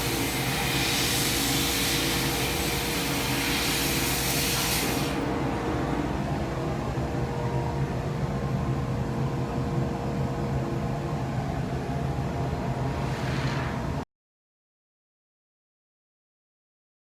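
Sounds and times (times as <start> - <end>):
rushing air hiss: 0.0 - 5.3
machine hum: 0.0 - 14.0.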